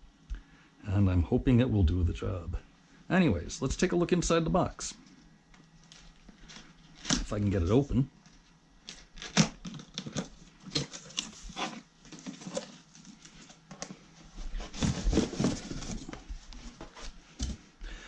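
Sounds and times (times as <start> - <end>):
packing rustling and crinkling: 5.0 - 7.4, 8.2 - 17.2
tape and cardboard tearing: 8.8 - 12.8.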